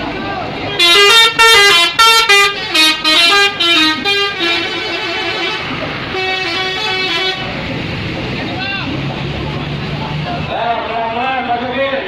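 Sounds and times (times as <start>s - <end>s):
multi-tone bus horn melody: 0.7s - 7.6s.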